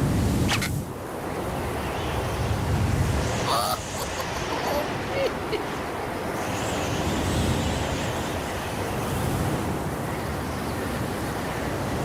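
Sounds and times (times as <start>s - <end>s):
gusty wind buffeting microphone: 0.0s - 12.0s.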